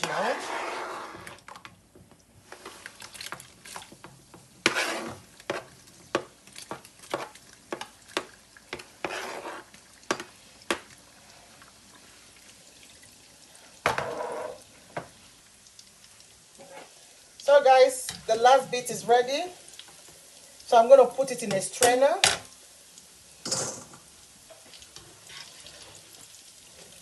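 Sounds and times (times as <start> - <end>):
utensil scraping a pan: 0.0 - 1.4, 4.6 - 5.7, 8.7 - 9.8, 13.9 - 14.6, 16.6 - 17.0, 25.0 - 26.0
dough frying in hot oil: 0.0 - 27.0.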